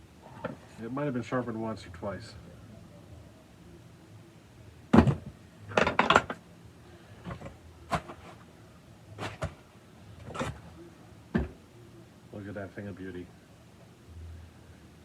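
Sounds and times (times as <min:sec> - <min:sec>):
clunks of metal parts set down: 0:05.0 - 0:06.4.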